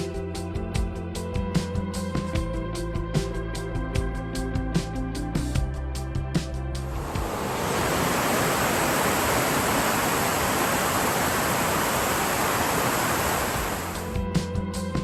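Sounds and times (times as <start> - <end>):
waterfall rushing: 6.9 - 14.2.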